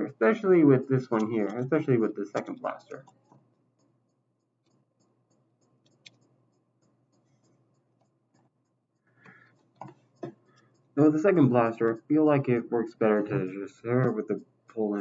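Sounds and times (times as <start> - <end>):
plastic parts clicking and rubbing: 5.6 - 6.3.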